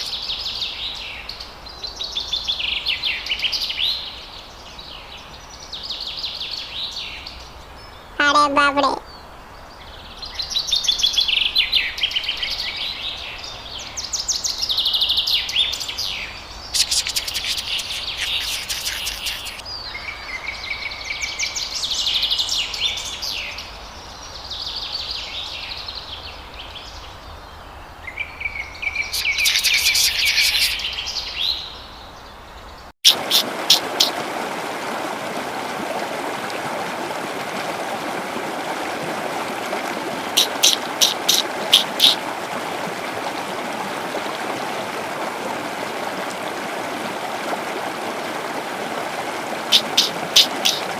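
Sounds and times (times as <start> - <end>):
animal high chirping calls: 16.8 - 19.6, 29.1 - 31.0, 33.1 - 34.2, 40.4 - 42.2, 49.7 - 50.9
sharp clicks: 40.4 - 42.2.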